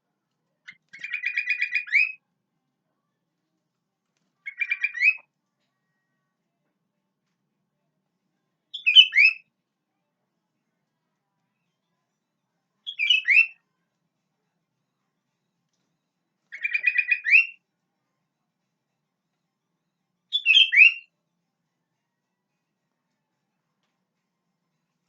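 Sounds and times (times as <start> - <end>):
bulbul singing: 0.7 - 2.2, 8.8 - 9.4, 12.9 - 13.6, 16.5 - 17.6, 20.3 - 21.0.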